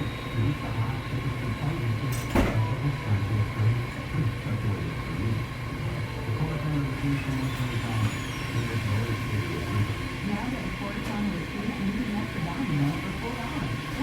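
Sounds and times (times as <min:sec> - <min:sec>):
faint hum: 0:00.0 - 0:14.0
washing machines and dryers rumbling: 0:00.0 - 0:14.0
sharp clunk: 0:02.2 - 0:02.6.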